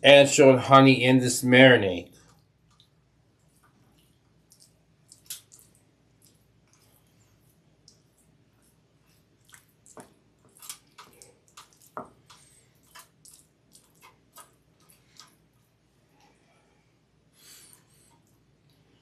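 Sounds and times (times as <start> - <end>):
brush squishing wet marinade: 2.1 - 16.4.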